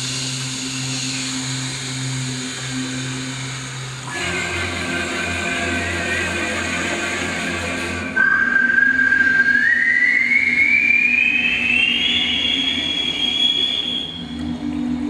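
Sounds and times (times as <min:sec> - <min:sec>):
high whine climbing in pitch: 0:00.0 - 0:15.0
rushing noise: 0:00.0 - 0:15.0.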